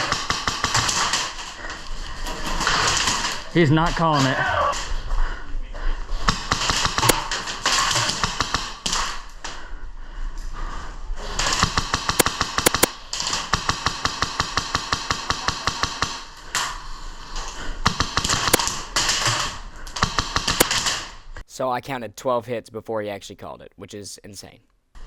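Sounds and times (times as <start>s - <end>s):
airsoft rifle rapid firing: 0.0s - 1.6s, 6.3s - 9.3s, 11.3s - 16.6s, 17.8s - 21.1s.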